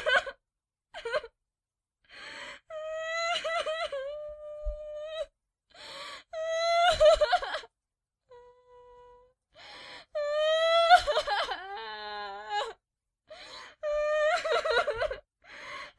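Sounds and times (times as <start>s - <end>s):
gasping in-breath: 2.0s - 2.7s, 5.7s - 6.4s, 9.6s - 10.2s, 15.4s - 15.9s
person wailing and sobbing: 13.8s - 15.2s.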